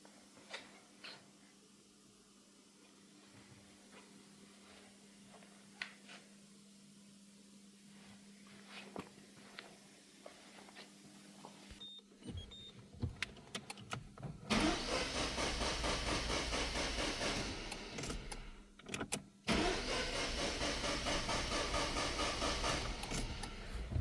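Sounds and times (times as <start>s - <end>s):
starter motor cranking engine: 14.5s - 18.6s, 19.5s - 24.0s.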